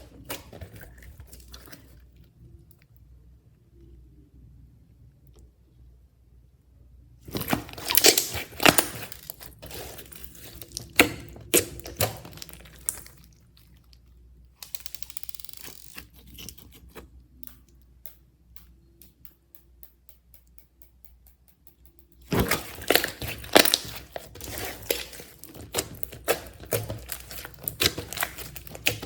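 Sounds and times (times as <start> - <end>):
slime crackling and tearing: 7.3 - 14.0, 22.2 - 29.0.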